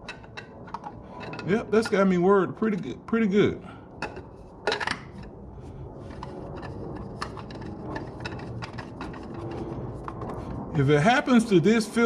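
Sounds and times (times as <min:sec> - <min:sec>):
rustling scrape: 0:04.3 - 0:10.8.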